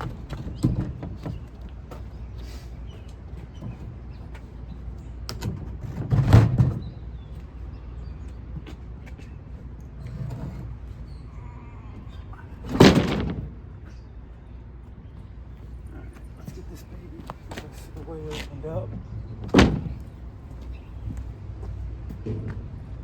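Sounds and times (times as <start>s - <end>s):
crate boards creaking and scraping: 0.0s - 2.1s, 5.4s - 6.9s, 10.0s - 11.1s, 12.0s - 13.6s, 17.6s - 21.2s.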